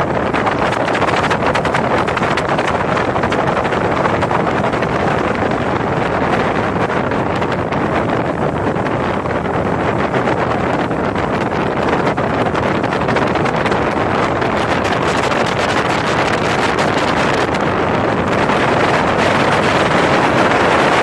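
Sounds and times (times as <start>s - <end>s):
rushing water: 0.0s - 21.0s
speedboat engine: 0.0s - 21.0s
wind buffeting microphone: 0.0s - 21.0s.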